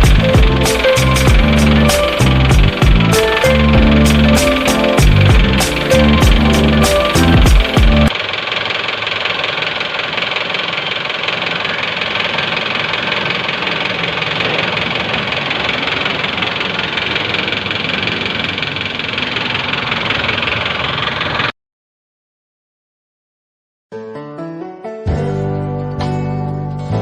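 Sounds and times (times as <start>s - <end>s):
diesel engine clattering: 0.0s - 21.5s.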